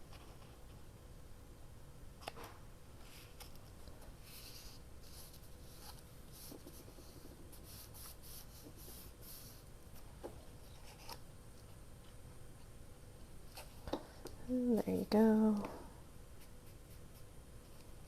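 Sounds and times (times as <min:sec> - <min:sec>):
rubbing strokes on paper: 0:04.2 - 0:10.1.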